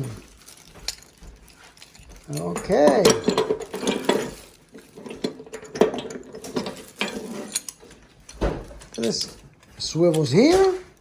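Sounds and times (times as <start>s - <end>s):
metal vise clicks and rattles: 2.2s - 11.0s.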